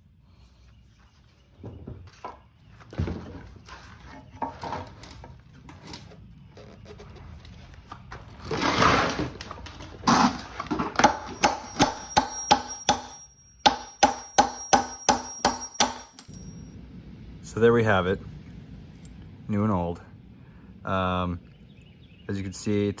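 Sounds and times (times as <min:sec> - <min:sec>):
hammer striking metal: 0:10.9 - 0:16.7.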